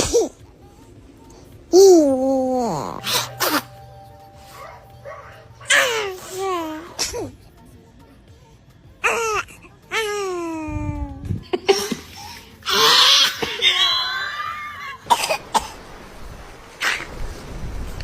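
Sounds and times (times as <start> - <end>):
baby sneezing: 3.0 - 3.7, 5.7 - 7.4
baby coughing: 3.0 - 3.8, 5.7 - 7.4, 15.1 - 15.8.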